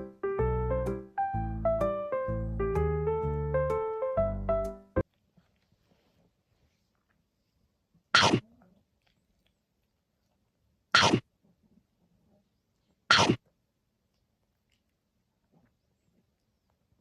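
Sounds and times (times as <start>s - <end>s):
small dog short sharp noises: 13.1s - 13.4s.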